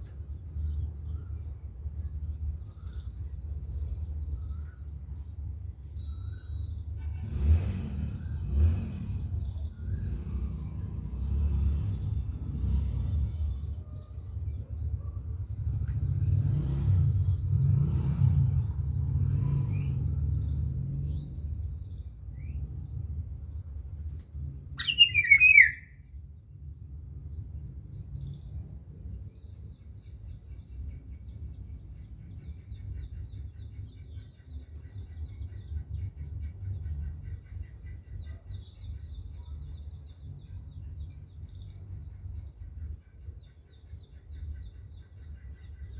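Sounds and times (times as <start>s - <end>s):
bird call: 24.8s - 26.0s.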